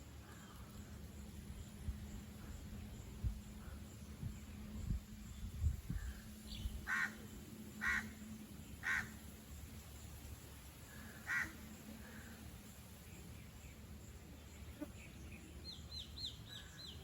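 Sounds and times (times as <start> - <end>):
wind rumble on microphone: 1.2 - 7.4
bird harsh calls: 6.0 - 8.2, 8.8 - 9.2, 10.9 - 12.3.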